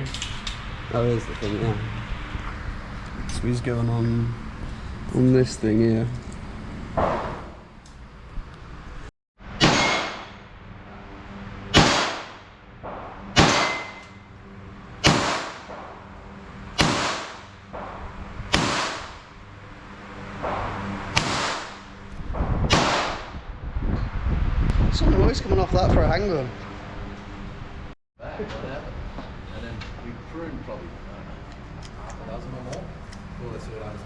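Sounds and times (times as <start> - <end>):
handgun shots with echo: 9.6 - 10.3, 11.7 - 12.3, 13.4 - 14.0, 15.0 - 15.6, 16.8 - 17.4, 18.5 - 19.1, 20.4 - 21.7, 22.7 - 23.3.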